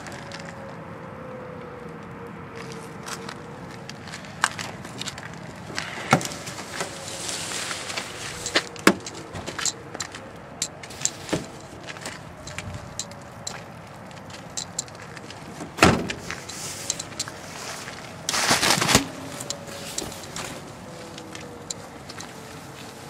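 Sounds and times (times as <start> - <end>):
distant warning siren wavering: 0.0 - 23.0
sharp clicks and knocks: 8.4 - 17.4.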